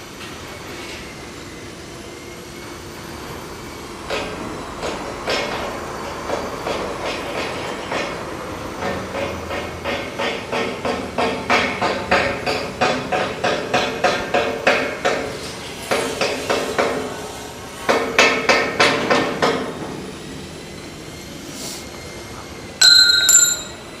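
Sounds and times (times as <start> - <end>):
hammer striking steel railing: 8.8 - 15.3, 22.8 - 24.0.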